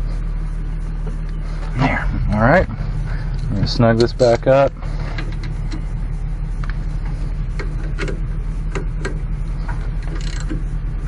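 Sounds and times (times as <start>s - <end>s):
steady low hum: 0.0s - 11.0s
socket ratchet clicking: 10.1s - 10.6s.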